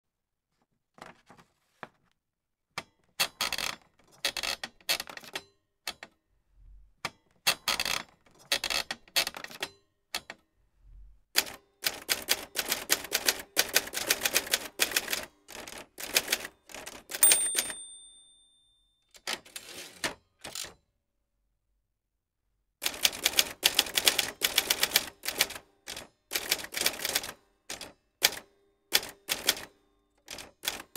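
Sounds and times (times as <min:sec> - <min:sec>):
typewriter typing: 0:11.4 - 0:17.9, 0:22.8 - 0:30.9
typewriter bell ringing: 0:17.2 - 0:19.8.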